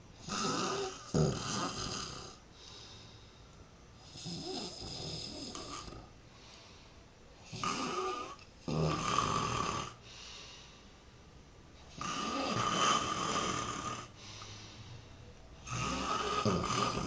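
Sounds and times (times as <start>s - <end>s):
man snoring loudly: 0.2s - 2.4s, 4.1s - 6.1s, 7.5s - 10.0s, 11.9s - 14.1s, 15.6s - 17.0s.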